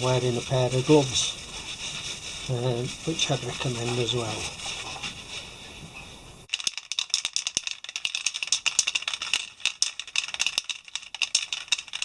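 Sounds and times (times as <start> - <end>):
brush scrubbing chain: 0.0 - 5.6, 6.5 - 12.0
chain links rattling: 6.5 - 12.0.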